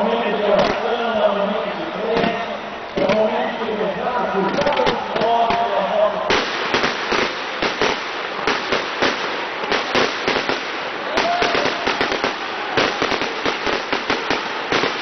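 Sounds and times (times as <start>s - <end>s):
firecrackers crackling and banging: 0.6s - 1.0s, 4.4s - 15.0s.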